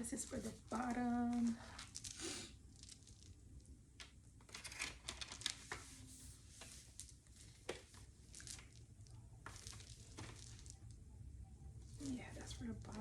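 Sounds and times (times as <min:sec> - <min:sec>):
packaging rustling and tearing: 0:04.5 - 0:05.9.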